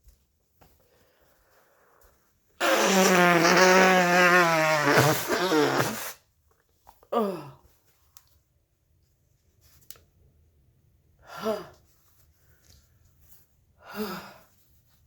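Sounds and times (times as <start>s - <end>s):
nose blowing into tissue: 2.6s - 6.3s.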